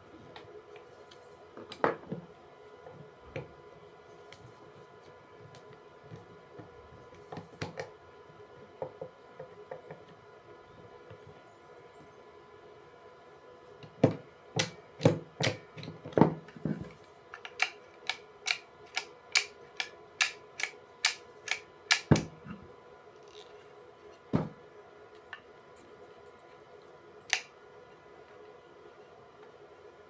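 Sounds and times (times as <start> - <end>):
electrical contactor clacking: 17.4 - 22.3.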